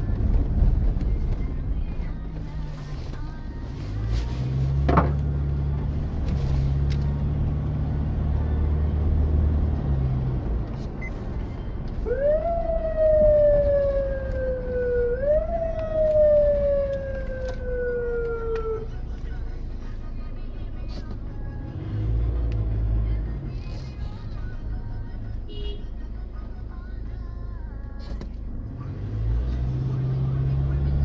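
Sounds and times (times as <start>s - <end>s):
vehicle engine and road noise: 0.0s - 31.0s
police siren wailing: 12.0s - 18.9s.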